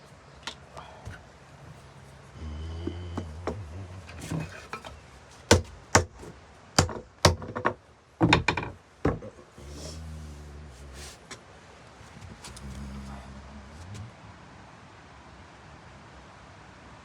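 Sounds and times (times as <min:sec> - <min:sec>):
low steady hum: 0:00.0 - 0:17.0
hard knocks on wood: 0:05.5 - 0:09.3.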